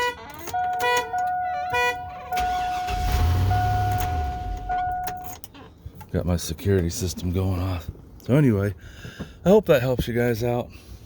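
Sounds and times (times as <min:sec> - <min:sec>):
car horn toots: 0:00.0 - 0:05.3.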